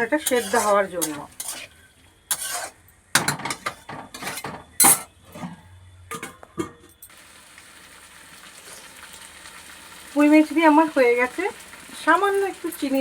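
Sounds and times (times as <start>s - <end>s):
metal cookware clinking: 0.0s - 1.7s, 2.3s - 7.1s
vegetables sizzling: 0.0s - 2.8s, 7.1s - 13.0s.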